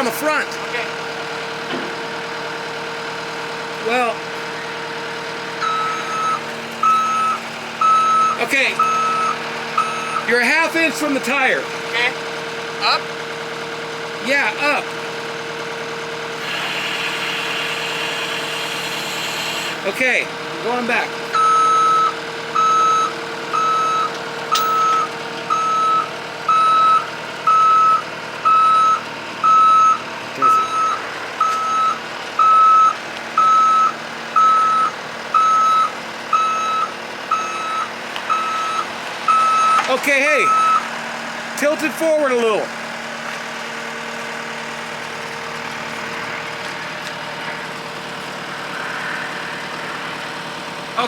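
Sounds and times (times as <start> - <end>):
loader engine humming at low revs: 0.0 - 51.0
backup alarm beeping: 5.6 - 10.3, 21.4 - 40.9
steady hum: 45.5 - 51.0.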